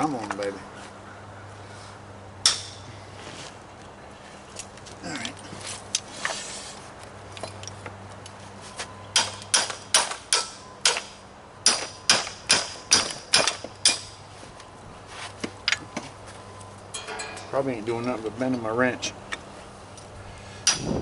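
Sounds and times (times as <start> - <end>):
hammer striking metal wrench: 16.9 - 17.6.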